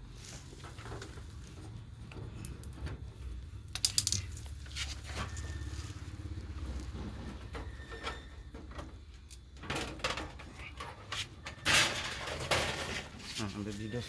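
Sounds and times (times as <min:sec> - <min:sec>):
scraping rattle: 0:03.7 - 0:14.0
copier parts clicking and knocking: 0:07.4 - 0:13.2.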